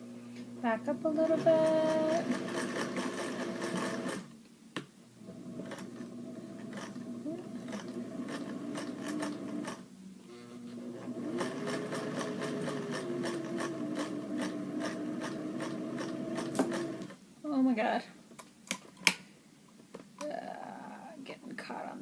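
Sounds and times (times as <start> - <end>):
sewing machine motor: 1.2 - 4.3, 5.4 - 9.8, 10.8 - 17.2.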